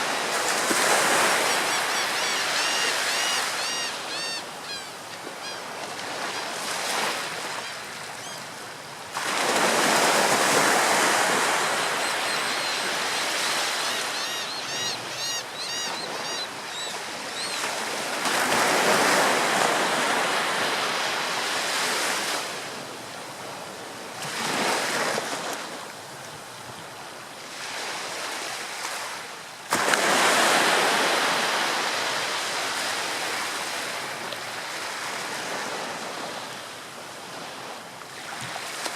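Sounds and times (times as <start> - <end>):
waves crashing on shore: 0.0 - 38.9
bird calls: 1.6 - 6.5, 11.4 - 17.7.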